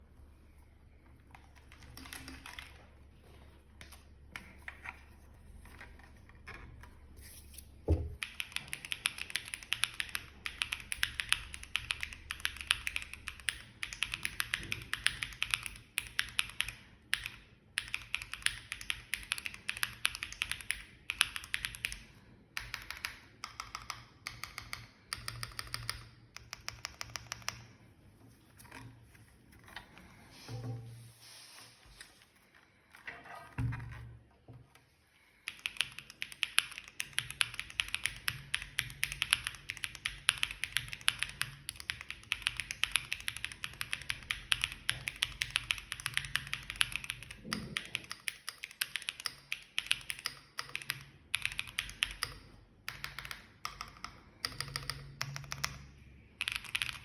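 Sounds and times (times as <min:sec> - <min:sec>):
mechanical keyboard typing: 0:01.2 - 0:02.9, 0:08.2 - 0:27.7, 0:35.4 - 0:57.0.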